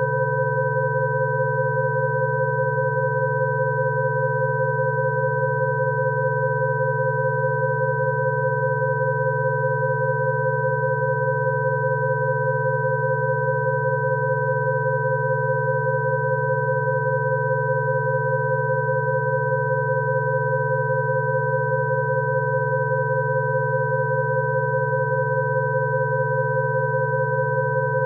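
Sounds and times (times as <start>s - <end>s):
steady electronic sine tones: 0.0s - 28.0s.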